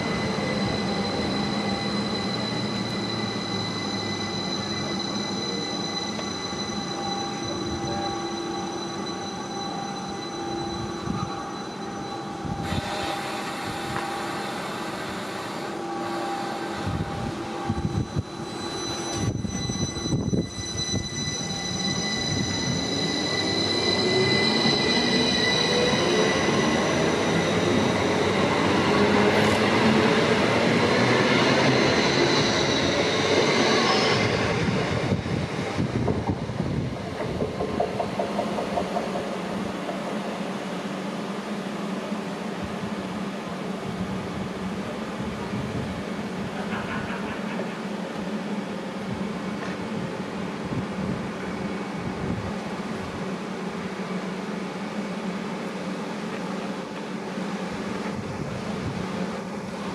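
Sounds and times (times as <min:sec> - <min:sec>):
train traction motors whining: 0:00.0 - 0:40.8.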